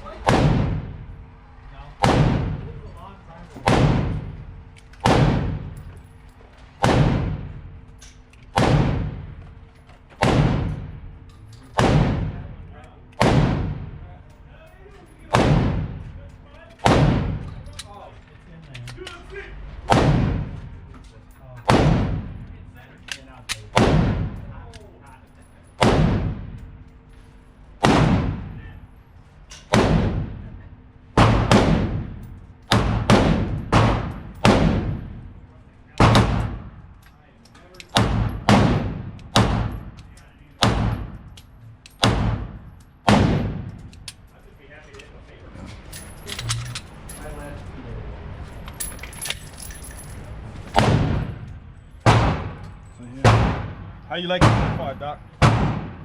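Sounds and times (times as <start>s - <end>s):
gunshots with echo: 0.2s - 1.1s, 2.0s - 2.8s, 3.6s - 4.4s, 5.0s - 5.8s, 6.8s - 7.6s, 8.6s - 9.4s, 10.2s - 11.0s, 11.8s - 12.6s, 13.2s - 14.0s, 15.3s - 16.0s, 16.8s - 17.5s, 19.9s - 20.6s, 27.8s - 28.6s, 31.2s - 35.2s, 42.0s - 43.7s, 50.7s - 51.5s, 53.2s - 56.0s.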